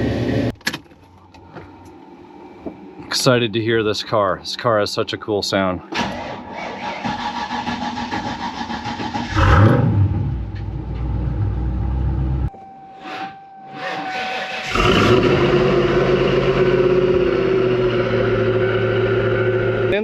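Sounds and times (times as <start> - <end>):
car engine idling and revving: 0.0 - 2.0, 6.0 - 12.5, 14.6 - 20.0.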